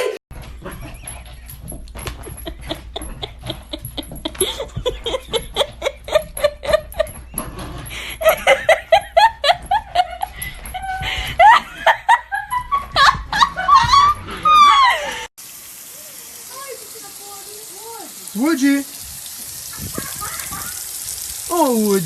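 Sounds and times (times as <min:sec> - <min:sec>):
laughter in short bursts: 0:19.7 - 0:20.9.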